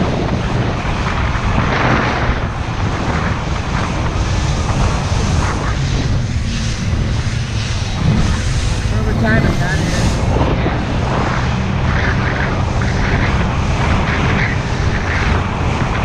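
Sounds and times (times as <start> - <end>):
outboard motor droning: 0.0 - 16.0
wind and water rushing: 0.0 - 16.0.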